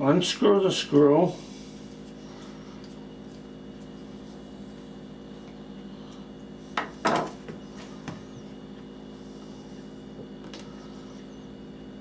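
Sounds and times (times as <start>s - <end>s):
low hum: 0.9s - 12.0s.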